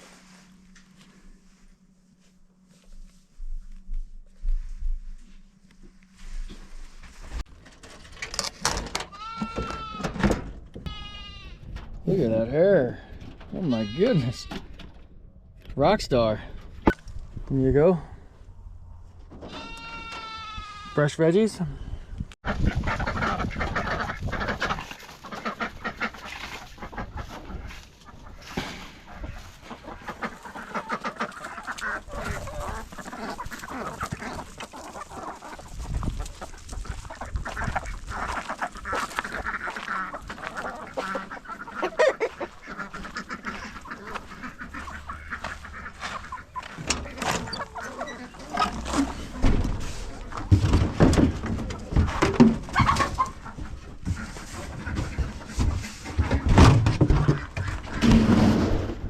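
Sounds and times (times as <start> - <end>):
poultry calling: 9.1 - 10.1, 10.8 - 11.8, 13.6 - 14.6, 19.5 - 21.2, 22.4 - 50.8.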